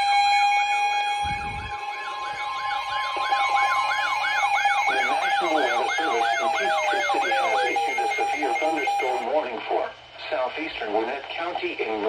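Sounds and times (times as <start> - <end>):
electronic siren yelping: 0.0 - 9.2.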